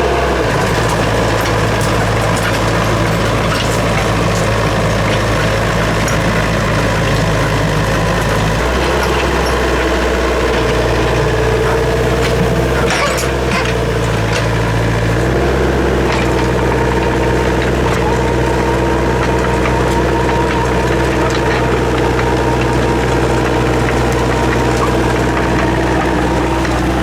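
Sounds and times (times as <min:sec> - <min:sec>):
excavator diesel engine running: 0:00.0 - 0:27.0.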